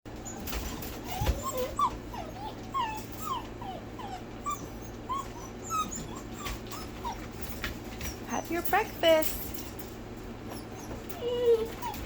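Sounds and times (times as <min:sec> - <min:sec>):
puppies whimpering and yipping: 0:00.1 - 0:07.8, 0:10.3 - 0:12.0.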